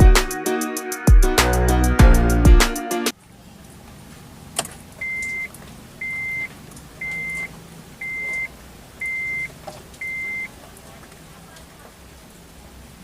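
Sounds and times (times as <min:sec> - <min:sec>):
car warning chime beeping: 0:05.0 - 0:10.6.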